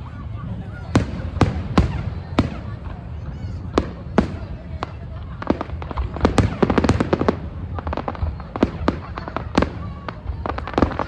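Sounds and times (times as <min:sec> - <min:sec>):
fireworks crackling and banging: 0:00.0 - 0:11.0.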